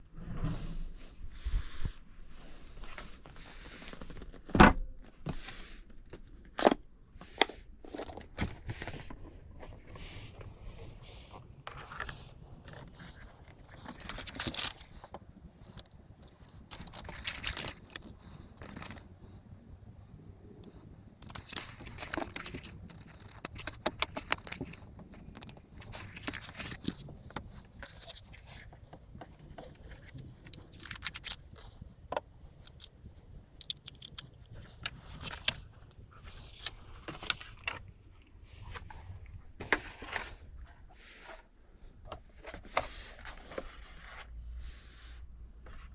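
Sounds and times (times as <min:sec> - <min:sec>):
packaging rustling and scraping: 0:02.4 - 0:19.4, 0:21.2 - 0:41.5.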